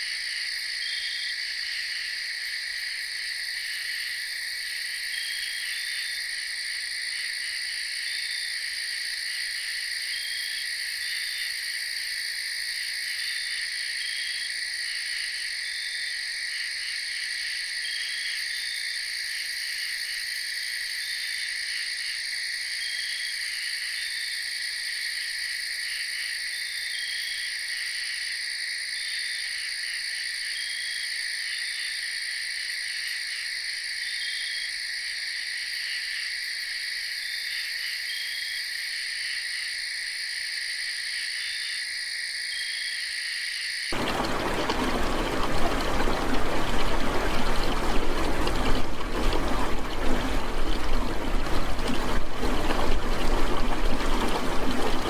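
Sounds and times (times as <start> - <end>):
frogs calling: 43.9 - 55.0.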